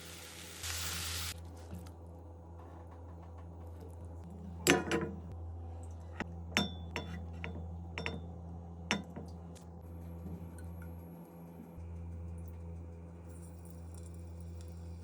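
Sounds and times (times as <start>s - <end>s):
steady low hum: 1.3s - 15.0s
dishes and utensils clinking: 4.6s - 5.3s, 6.6s - 8.3s, 8.9s - 9.3s.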